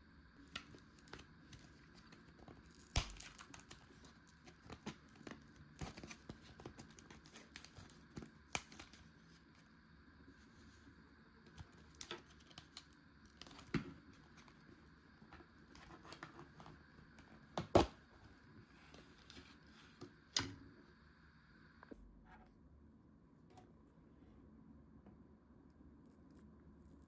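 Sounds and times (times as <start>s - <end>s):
packaging crinkling and tearing: 0.6s - 9.1s.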